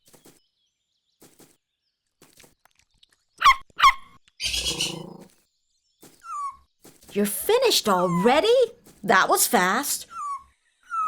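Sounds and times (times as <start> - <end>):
cartoon squeaky calls: 3.4 - 5.1
rough cartoon animal sound: 4.4 - 5.3.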